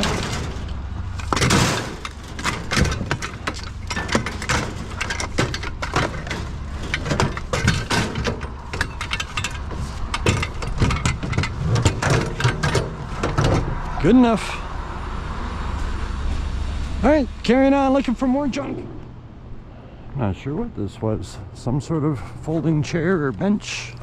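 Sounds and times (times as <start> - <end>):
chairs and scrap metal clattering: 0.0 - 14.1.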